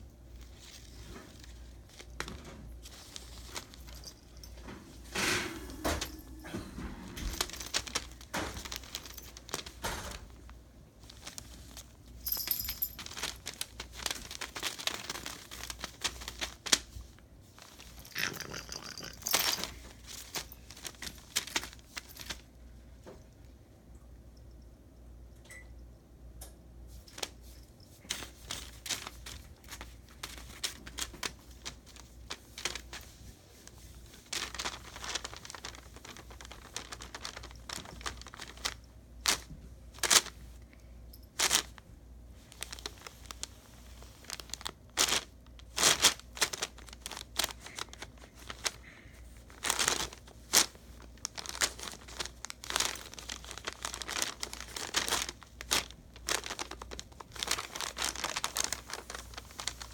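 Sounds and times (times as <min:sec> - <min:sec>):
tissue paper crinkling: 0:00.3 - 0:05.0, 0:07.1 - 0:22.6, 0:27.0 - 0:40.6, 0:41.3 - 0:41.8, 0:42.4 - 0:59.9.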